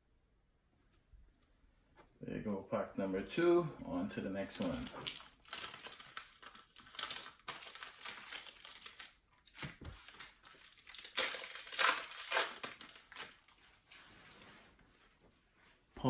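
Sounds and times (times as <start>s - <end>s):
card pack wrapper crinkling: 4.4s - 13.6s.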